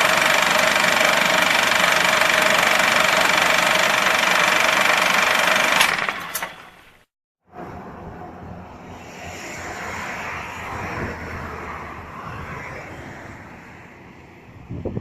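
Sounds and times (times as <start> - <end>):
vehicle passing by: 7.5 - 15.0.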